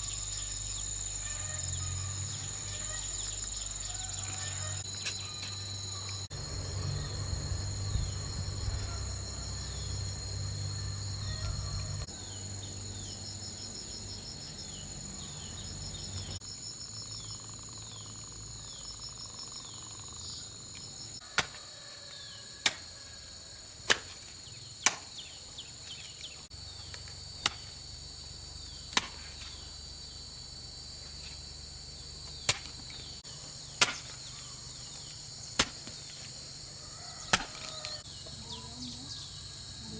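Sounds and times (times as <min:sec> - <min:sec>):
insects chirring: 0:00.0 - 0:39.9
sharp chopping strikes: 0:21.3 - 0:21.6, 0:22.6 - 0:23.0, 0:23.8 - 0:25.2, 0:28.9 - 0:29.5, 0:32.3 - 0:33.0, 0:33.8 - 0:34.3, 0:35.6 - 0:36.1, 0:37.3 - 0:37.9.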